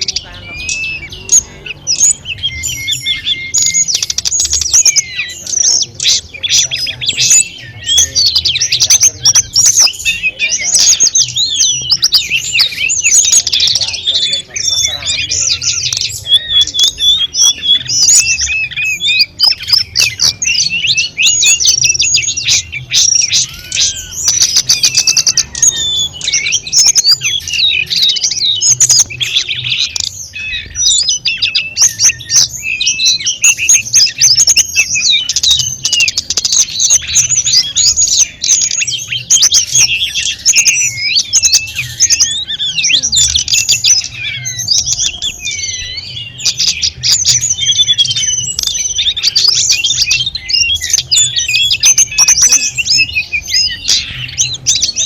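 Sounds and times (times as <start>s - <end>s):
songbird singing rapid trills: 0.0s - 55.0s.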